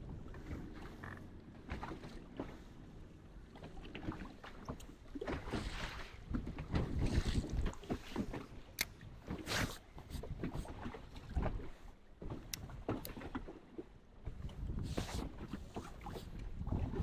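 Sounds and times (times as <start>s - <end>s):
water lapping against boat hull: 0.0s - 17.0s
wind buffeting microphone: 5.6s - 8.1s, 14.2s - 17.0s.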